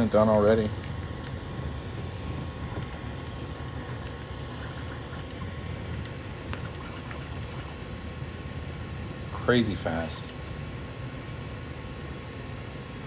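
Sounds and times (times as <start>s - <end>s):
faint motor whine: 0.0s - 13.0s
printer fan whirring: 0.0s - 13.0s
print head clicks: 4.8s - 8.2s.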